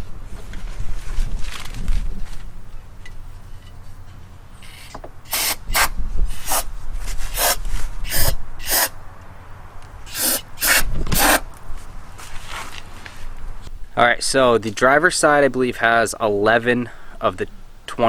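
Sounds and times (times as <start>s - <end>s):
aerosol spray hissing: 7.3s - 8.9s, 10.1s - 11.4s.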